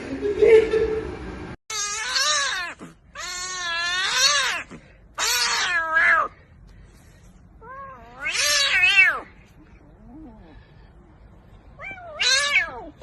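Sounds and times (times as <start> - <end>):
cat yowling: 1.7 - 6.4, 7.6 - 9.4, 11.8 - 13.0.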